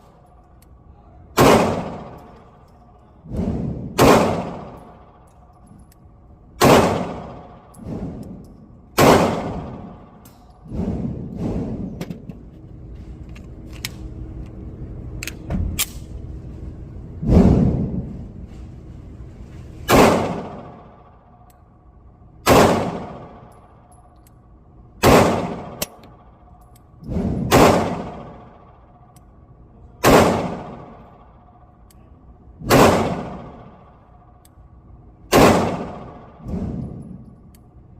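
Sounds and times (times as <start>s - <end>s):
pistol shots with echo: 1.3s - 2.6s, 3.4s - 5.2s, 6.6s - 10.2s, 19.9s - 21.1s, 22.4s - 23.5s, 25.0s - 26.3s, 27.4s - 28.9s, 30.0s - 31.5s, 32.6s - 34.0s, 35.3s - 37.0s.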